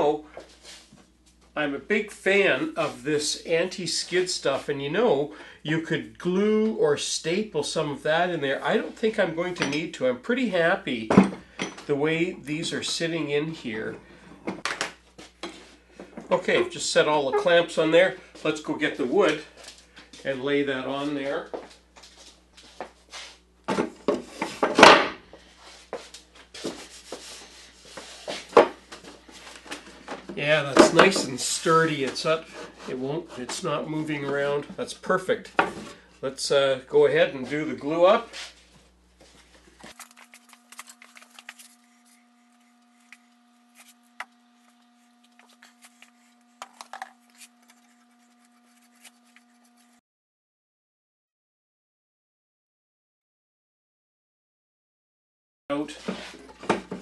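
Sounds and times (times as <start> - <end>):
steady low hum: 25.2 - 50.0.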